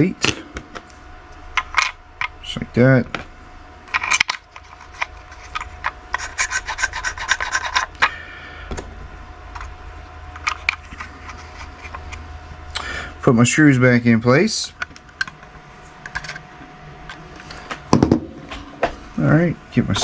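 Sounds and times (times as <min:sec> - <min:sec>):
rapid scraping clicks: 0:03.9 - 0:08.2, 0:09.5 - 0:12.8
small parts clicking and tapping: 0:03.9 - 0:08.8, 0:14.8 - 0:16.4.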